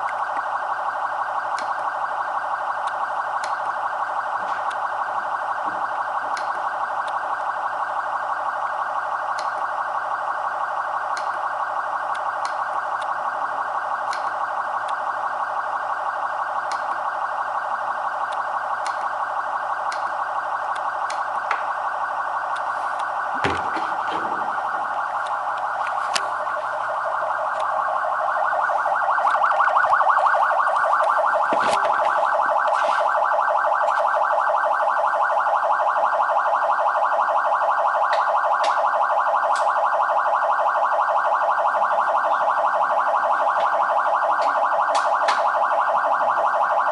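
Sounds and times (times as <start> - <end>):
pulsing electronic siren: 0.0 - 46.9
knocks: 23.4 - 24.6.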